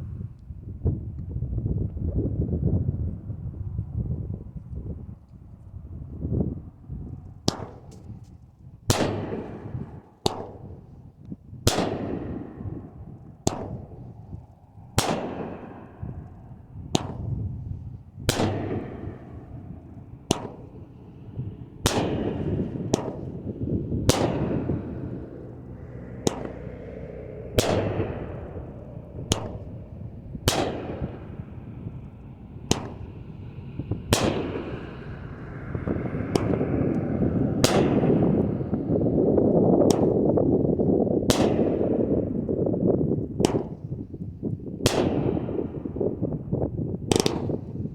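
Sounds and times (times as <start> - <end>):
fireworks bangs: 15.0 - 36.7.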